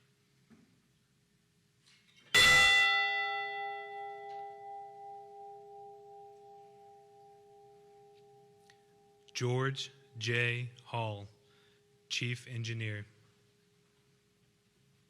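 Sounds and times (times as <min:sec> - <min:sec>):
large bell ringing: 0:02.4 - 0:09.2.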